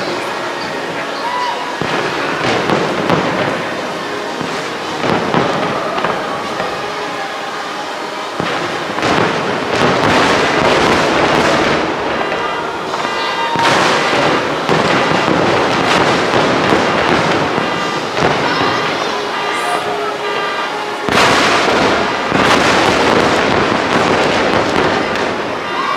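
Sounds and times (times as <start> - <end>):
fireworks bursting and crackling: 0.0 - 25.9.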